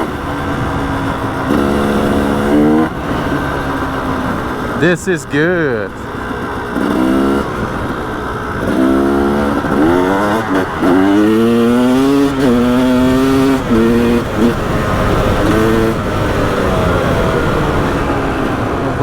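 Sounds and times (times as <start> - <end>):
two-stroke motorcycle engine revving: 0.0 - 19.0.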